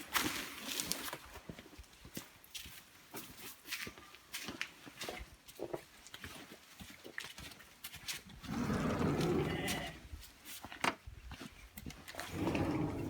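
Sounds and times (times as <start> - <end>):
farm animal bleating: 9.2 - 10.0.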